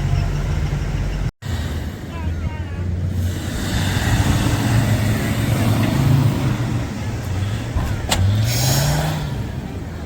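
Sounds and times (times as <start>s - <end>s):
vehicle engine under load: 0.0s - 10.0s.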